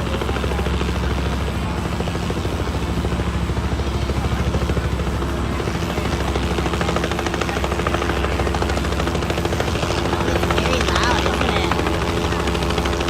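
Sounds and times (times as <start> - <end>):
helicopter rotor chopping: 0.0 - 13.0
steady whine: 0.0 - 13.0.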